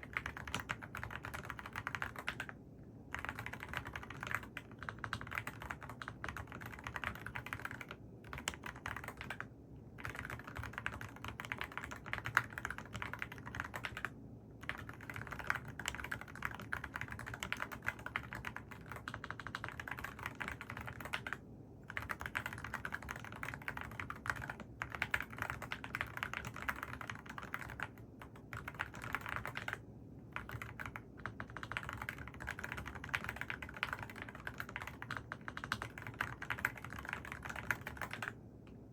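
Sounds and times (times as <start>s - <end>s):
mechanical keyboard typing: 0.0s - 29.8s, 30.4s - 38.4s.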